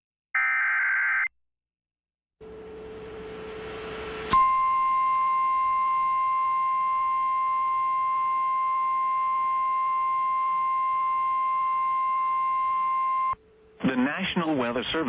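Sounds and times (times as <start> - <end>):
high single alarm tone: 4.3 - 13.4.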